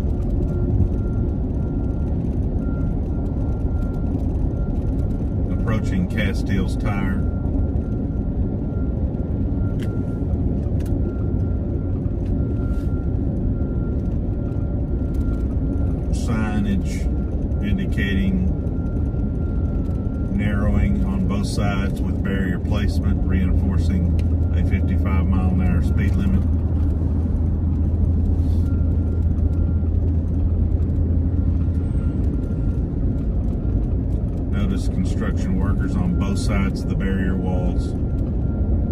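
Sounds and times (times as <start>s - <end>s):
tyre and engine rumble: 0.0s - 38.9s
faint steady high tone: 34.6s - 38.6s.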